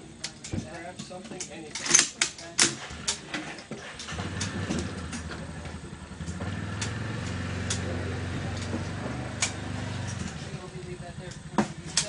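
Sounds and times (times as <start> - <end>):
low engine-like drone: 2.8 - 12.0
sharp cracks: 6.1 - 12.0.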